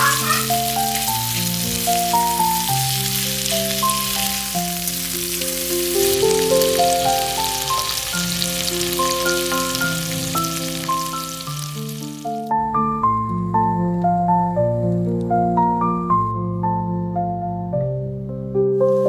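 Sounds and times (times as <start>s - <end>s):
food sizzling in hot oil: 0.0s - 12.5s
piano music: 0.0s - 19.0s.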